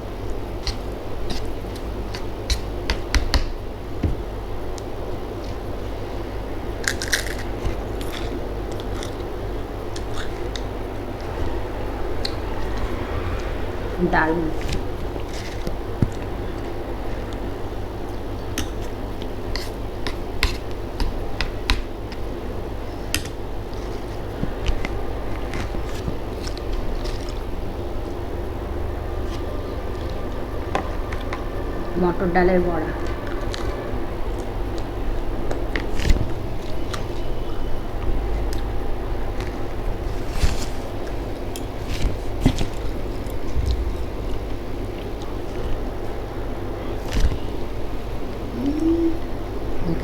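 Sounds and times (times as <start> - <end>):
steady low hum: 0.0 - 50.0
crunchy fritter chewing: 4.7 - 13.6
steady low rumble: 8.6 - 18.2, 24.2 - 50.0.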